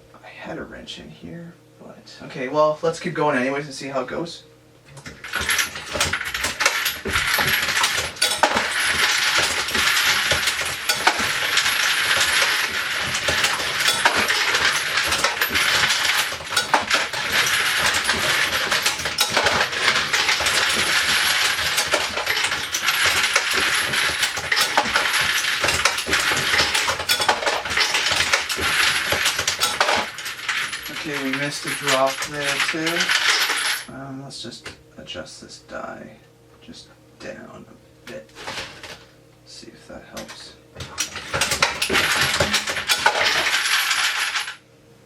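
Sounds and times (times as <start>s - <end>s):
metallic clatter of brass cases: 4.9s - 33.8s, 40.2s - 44.6s
press clanks: 4.9s - 33.9s, 40.2s - 44.6s.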